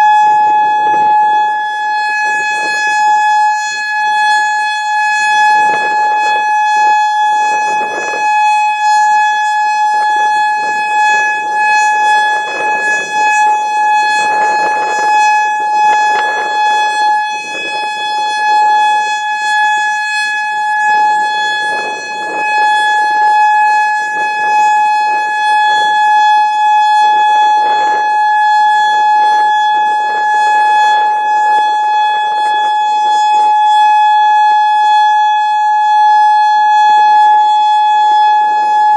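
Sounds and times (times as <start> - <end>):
wind buffeting microphone: 0.0 - 3.5, 5.4 - 19.9, 20.5 - 32.8
steady warning siren tone: 0.0 - 38.9.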